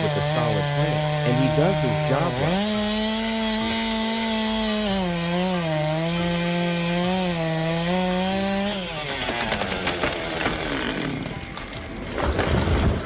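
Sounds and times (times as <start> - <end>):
chainsaw cutting at high revs: 0.0 - 13.0.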